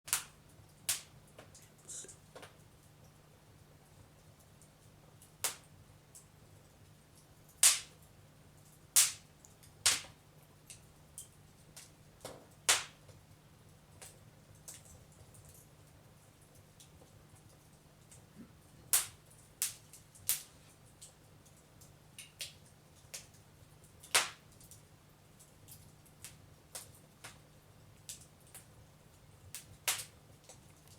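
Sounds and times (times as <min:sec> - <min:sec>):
loud sharp pops of fire: 0:00.1 - 0:01.2, 0:05.4 - 0:05.7, 0:07.6 - 0:08.0, 0:09.0 - 0:10.2, 0:12.3 - 0:13.1, 0:18.9 - 0:20.5, 0:24.0 - 0:24.4, 0:29.5 - 0:30.2
wood fire crackling: 0:00.1 - 0:30.9.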